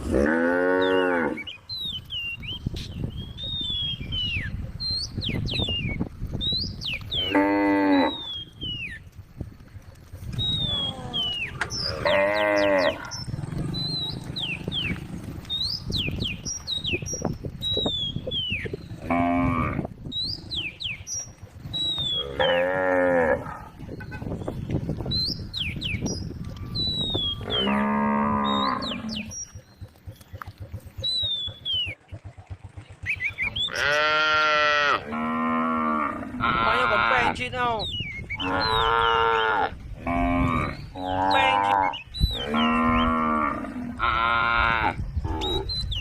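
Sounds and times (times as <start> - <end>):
cows mooing: 0.0 - 1.6, 7.1 - 8.5, 10.6 - 15.5, 18.6 - 20.8, 21.7 - 23.9, 27.2 - 29.5, 33.6 - 37.4, 38.4 - 45.8.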